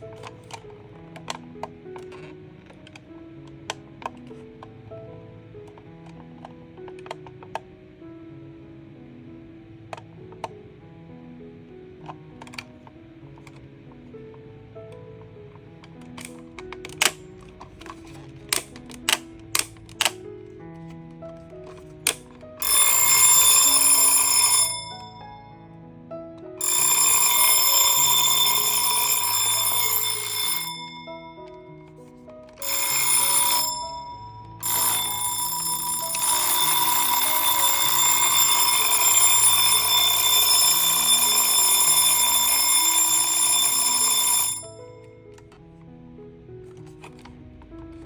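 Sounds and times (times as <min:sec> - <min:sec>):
background music: 0:00.0 - 0:48.0
alarm clock bell ringing: 0:22.0 - 0:25.6, 0:26.6 - 0:31.9, 0:32.6 - 0:45.1.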